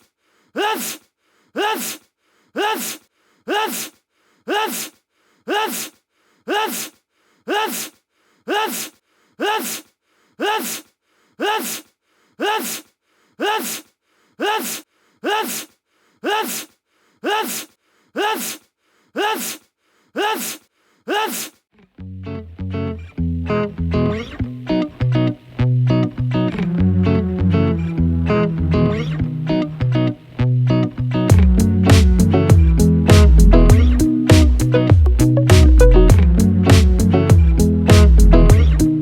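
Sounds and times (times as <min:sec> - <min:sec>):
person sneezing: 0:00.0 - 0:21.6.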